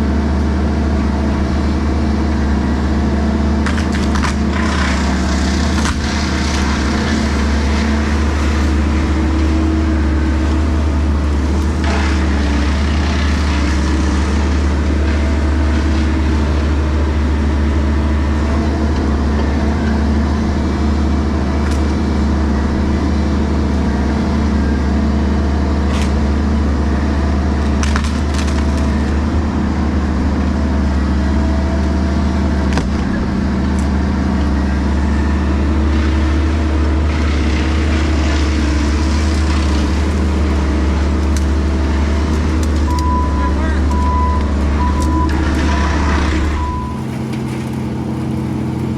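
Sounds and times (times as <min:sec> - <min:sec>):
diesel engine running: 0:00.0 - 0:48.9
wood cracking and snapping: 0:03.6 - 0:09.6, 0:27.6 - 0:29.4, 0:37.1 - 0:43.1.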